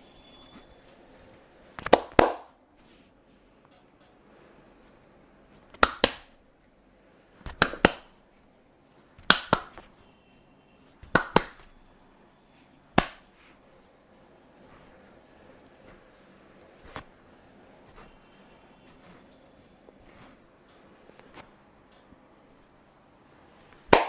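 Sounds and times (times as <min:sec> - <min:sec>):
hands slapping body: 0:01.8 - 0:02.6, 0:05.7 - 0:06.4, 0:07.4 - 0:08.2, 0:09.2 - 0:10.0, 0:11.0 - 0:11.7, 0:13.0 - 0:13.5, 0:23.8 - 0:24.0.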